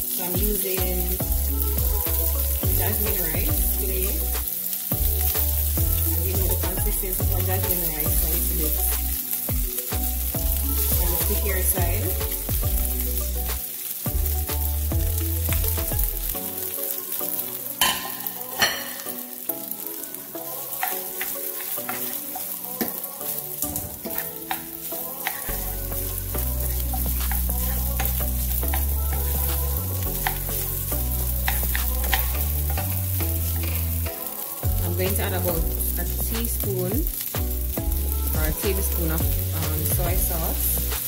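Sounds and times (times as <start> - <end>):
background music with bass: 0.0 - 21.2, 22.1 - 41.0
rice sizzling in hot oil: 0.0 - 41.0
spoon scraping a pot: 31.4 - 32.9.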